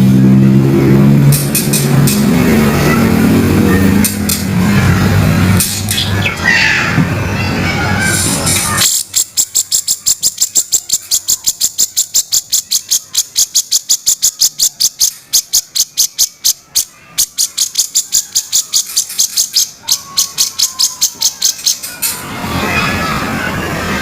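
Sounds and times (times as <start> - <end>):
bird rattling call: 8.8 - 22.1.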